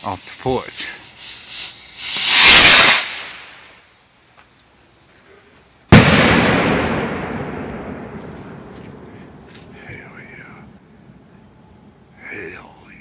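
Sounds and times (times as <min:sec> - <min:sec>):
firework launch hiss: 0:00.0 - 0:10.8
firework bang echoing: 0:02.0 - 0:03.5, 0:05.9 - 0:10.4.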